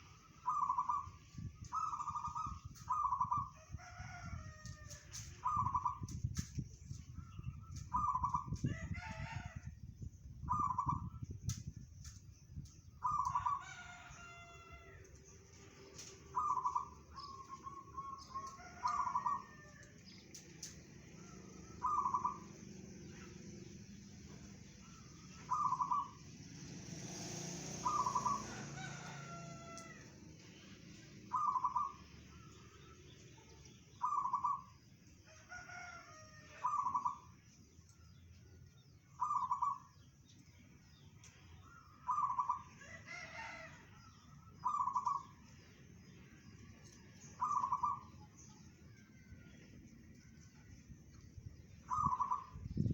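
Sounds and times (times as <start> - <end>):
birds chirping faintly: 0.0 - 52.9
dove cooing: 0.4 - 4.1, 5.4 - 6.1, 7.9 - 9.4, 16.0 - 19.7, 21.5 - 22.5, 25.4 - 26.2, 27.7 - 30.0, 31.3 - 32.0, 47.4 - 48.1, 51.9 - 52.5.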